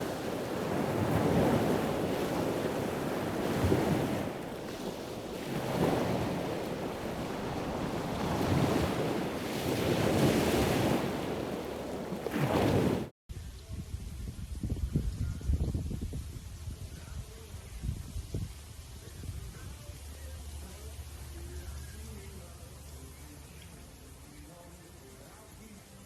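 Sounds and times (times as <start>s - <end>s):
surf rushing: 0.0s - 13.1s
wind: 0.0s - 26.0s.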